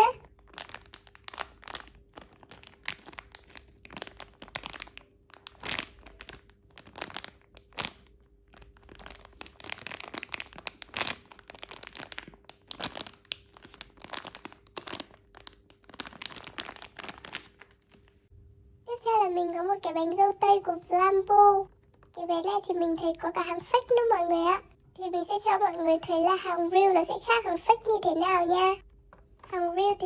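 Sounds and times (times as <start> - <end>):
plastic packaging crinkling: 0.1 - 18.3, 21.8 - 22.2.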